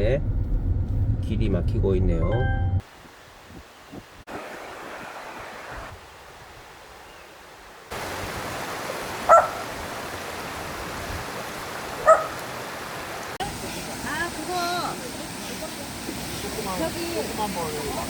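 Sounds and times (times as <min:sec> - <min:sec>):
rush of flowing water: 0:02.8 - 0:18.0
dog bark: 0:09.3 - 0:09.7, 0:12.0 - 0:12.4.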